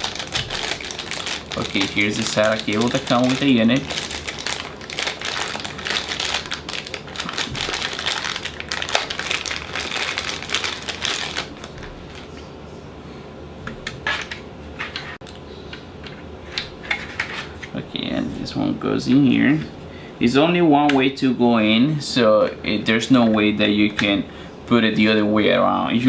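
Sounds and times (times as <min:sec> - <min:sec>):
packaging rustling: 0:00.0 - 0:12.5.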